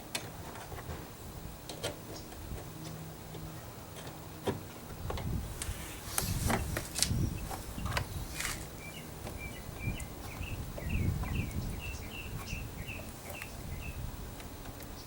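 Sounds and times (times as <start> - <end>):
small bird chirping: 6.6 - 14.0.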